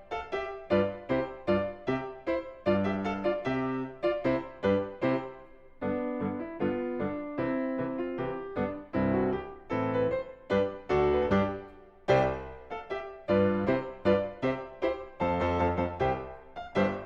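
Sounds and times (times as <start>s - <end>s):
piano music: 0.0s - 17.0s.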